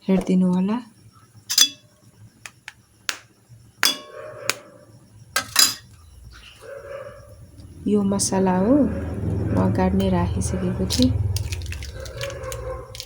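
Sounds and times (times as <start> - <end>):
dishes clinking and knocking: 1.5 - 1.8, 3.8 - 4.2, 5.4 - 5.9.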